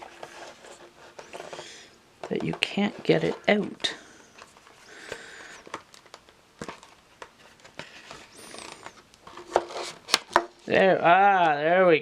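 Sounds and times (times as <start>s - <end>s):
box packaging rustling and scraping: 0.0s - 11.6s.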